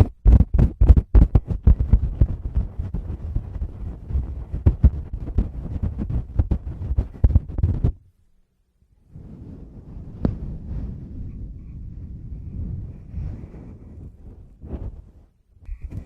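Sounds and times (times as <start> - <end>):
fingers tapping on microphone: 0.0 - 8.0.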